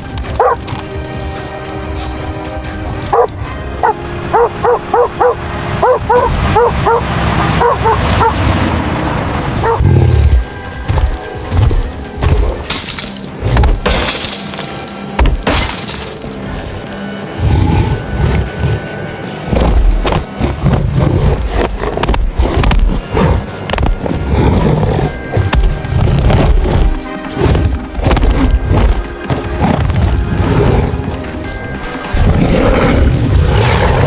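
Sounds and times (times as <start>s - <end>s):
dramatic music: 0.0s - 34.0s
dog barking excitedly: 7.6s - 8.4s
crashing shattering noise: 12.7s - 16.5s.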